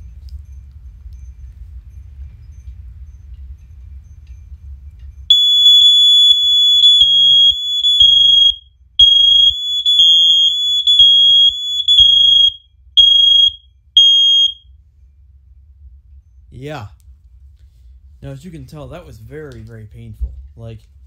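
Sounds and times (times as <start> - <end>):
smoke alarms beeping: 5.3 - 14.6.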